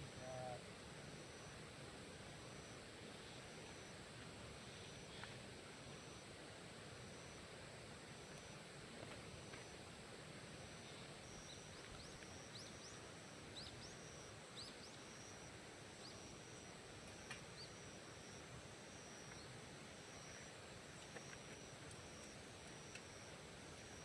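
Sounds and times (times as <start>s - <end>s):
faint steady hiss: 0.0s - 24.0s
faint click: 17.0s - 17.5s, 21.0s - 23.1s.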